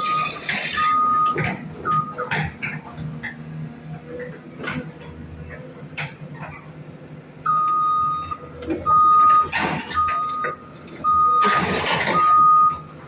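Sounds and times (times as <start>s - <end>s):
reversing alarm beeping: 0.0s - 2.3s, 7.4s - 13.0s.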